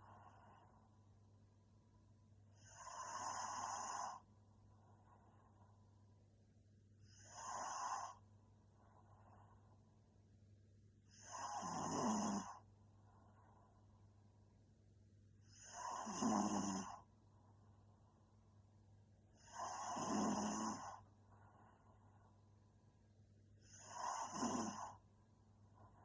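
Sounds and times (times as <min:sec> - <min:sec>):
soft breaths: 0:00.0 - 0:01.2, 0:02.5 - 0:06.2, 0:06.9 - 0:10.2, 0:11.0 - 0:14.3, 0:19.2 - 0:26.0
woman snoring: 0:02.6 - 0:04.2, 0:07.0 - 0:08.2, 0:11.1 - 0:12.6, 0:15.4 - 0:17.0, 0:19.4 - 0:21.0, 0:23.6 - 0:25.0.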